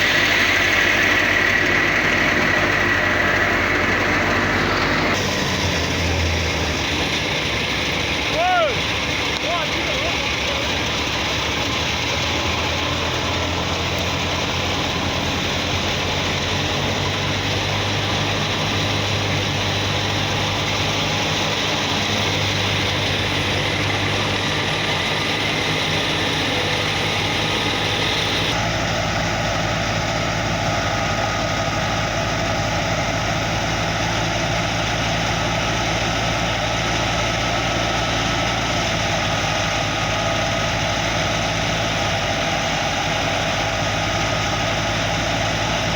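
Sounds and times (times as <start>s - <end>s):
thresher engine droning: 0.0s - 45.9s.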